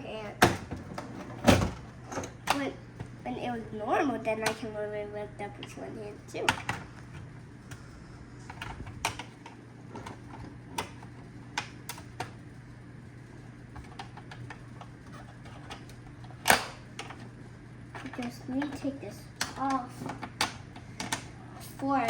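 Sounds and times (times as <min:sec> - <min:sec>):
plastic parts clicking and tapping: 0:13.7 - 0:17.3, 0:17.9 - 0:21.3.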